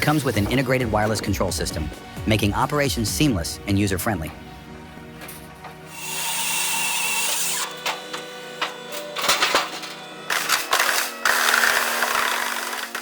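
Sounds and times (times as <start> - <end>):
background music: 0.0 - 13.0.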